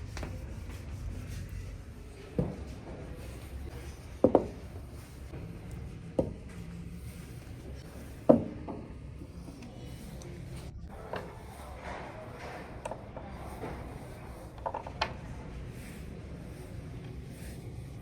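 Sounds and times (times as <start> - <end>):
tools knocking: 4.2 - 4.7.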